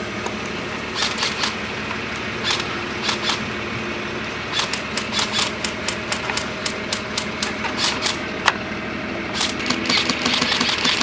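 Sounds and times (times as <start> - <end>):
diesel engine idling: 0.0 - 11.0
sharp snapping clicks: 4.6 - 8.2, 9.4 - 11.0.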